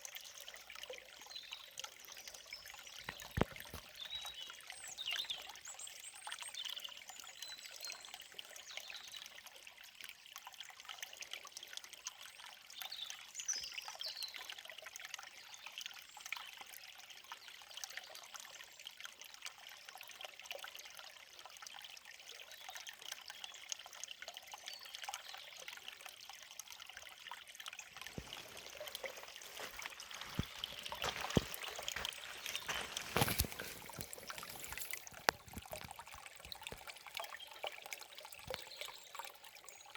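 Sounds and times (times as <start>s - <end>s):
stream babbling over rocks: 27.7s - 39.8s.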